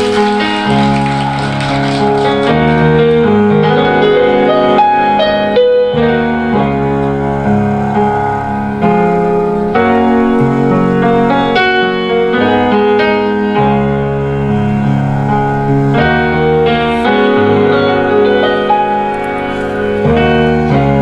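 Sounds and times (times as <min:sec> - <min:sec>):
piano chords: 0:00.0 - 0:21.0.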